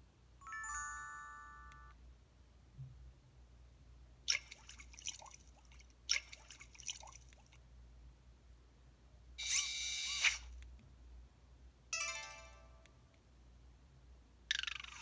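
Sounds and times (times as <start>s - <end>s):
bright ringing tone: 0.4s - 1.9s.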